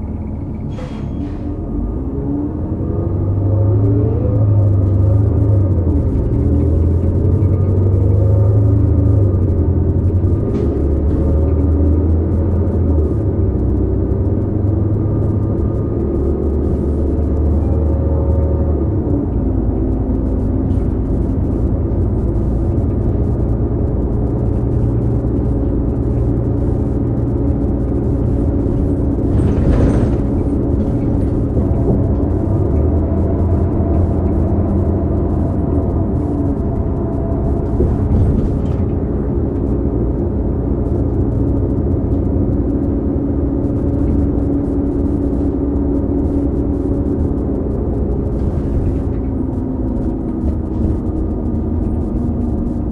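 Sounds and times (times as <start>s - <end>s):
bus engine rumble: 0.0s - 52.9s
transmission whining: 0.0s - 52.9s
brief air hiss: 0.7s - 1.6s
bearing noise: 24.4s - 39.8s.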